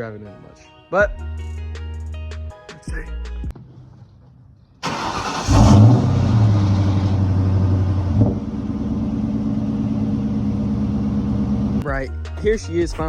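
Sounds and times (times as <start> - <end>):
starter motor cranking: 4.8 - 7.2
car engine revving and idling: 4.8 - 11.8.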